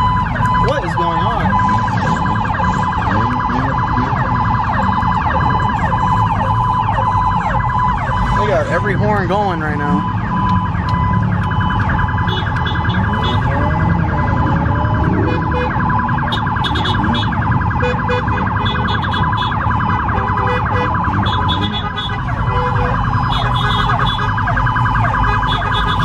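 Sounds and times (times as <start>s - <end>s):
car horns honking: 12.1s - 13.7s, 15.1s - 24.5s, 25.2s - 26.0s.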